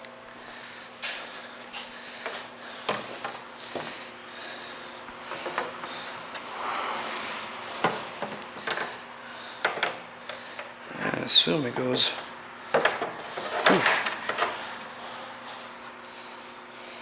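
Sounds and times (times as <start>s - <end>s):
clicks and knocks of parts handled: 8.2s - 8.9s, 9.6s - 10.7s, 12.7s - 14.6s.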